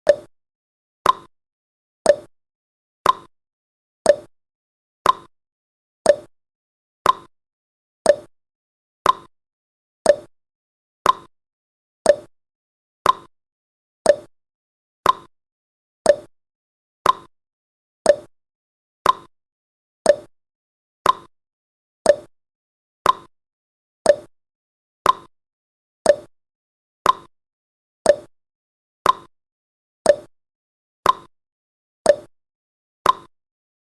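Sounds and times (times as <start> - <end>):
timer ticking: 0.0 - 0.3, 1.0 - 1.3, 2.1 - 2.3, 3.0 - 3.3, 4.0 - 4.3, 5.0 - 5.3, 6.0 - 6.3, 7.0 - 7.3, 8.1 - 8.3, 9.0 - 9.3, 10.0 - 10.3, 11.0 - 11.3, 12.0 - 12.3, 13.0 - 13.3, 14.0 - 14.3, 15.0 - 15.3, 16.0 - 16.3, 17.0 - 17.3, 18.1 - 18.3, 19.0 - 19.3, 20.1 - 20.3, 21.0 - 21.3, 22.1 - 22.3, 23.0 - 23.3, 24.1 - 24.3, 25.0 - 25.3, 26.0 - 26.3, 27.0 - 27.3, 28.1 - 28.3, 29.0 - 29.3, 30.1 - 30.3, 31.0 - 31.3, 32.1 - 32.3, 33.0 - 33.3.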